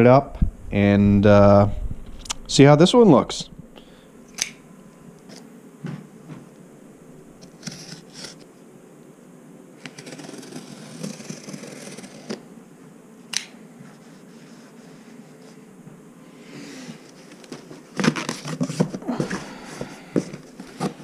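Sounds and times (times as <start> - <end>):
cardboard box scraping and rustling: 7.4 - 8.4, 9.8 - 12.5, 17.0 - 21.0.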